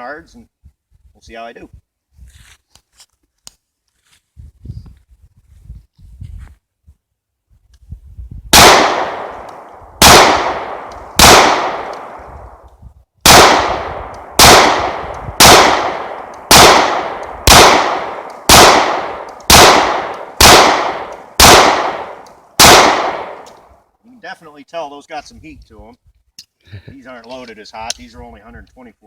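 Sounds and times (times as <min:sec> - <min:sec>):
pistol shots: 0:08.5 - 0:12.5, 0:13.2 - 0:23.6.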